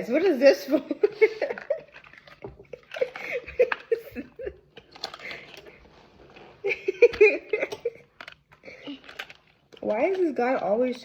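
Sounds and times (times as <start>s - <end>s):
girls giggling: 0.8s - 4.7s, 6.6s - 8.1s
plastic clicks and handling: 1.4s - 5.8s, 7.0s - 11.0s.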